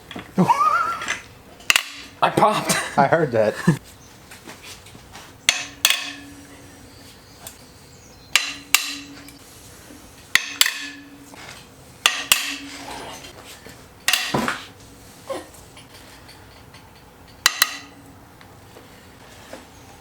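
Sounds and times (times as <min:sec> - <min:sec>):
hammer striking metal: 0:05.5 - 0:06.5, 0:08.3 - 0:09.4, 0:10.3 - 0:11.2, 0:12.0 - 0:12.8, 0:17.2 - 0:18.0.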